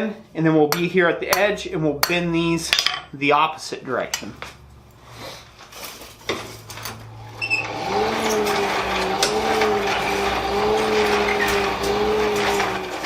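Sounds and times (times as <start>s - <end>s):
forge blower humming: 6.6s - 13.0s.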